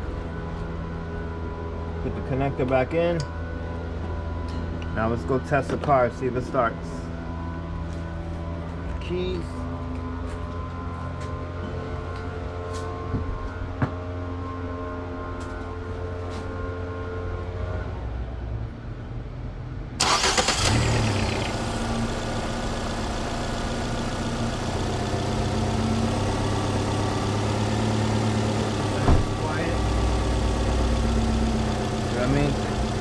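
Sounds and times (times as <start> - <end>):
car engine starting and idling: 20.0 - 33.0.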